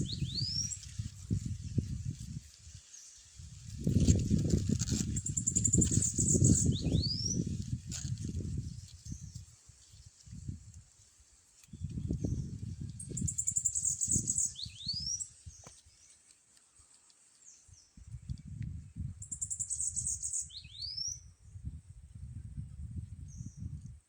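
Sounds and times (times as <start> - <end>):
faint high hiss: 0.0 - 4.4
bird buzzy trill song: 0.0 - 10.6, 11.6 - 21.7.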